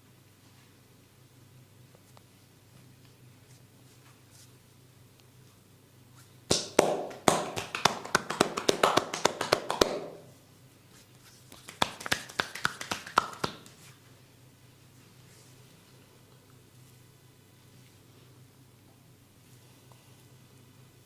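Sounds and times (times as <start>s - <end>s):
hands slapping body: 6.5s - 10.2s, 11.5s - 13.8s.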